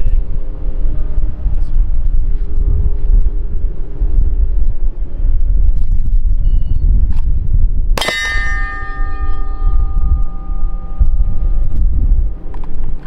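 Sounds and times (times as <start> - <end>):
wind rumble on microphone: 0.0 - 13.0
steel target clanging and ringing: 8.0 - 11.8.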